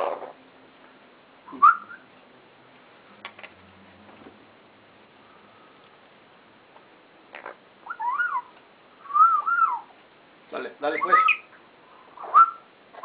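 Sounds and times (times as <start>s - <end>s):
parrot whistling: 1.5s - 2.1s, 7.8s - 9.9s, 11.0s - 11.5s, 12.2s - 12.7s.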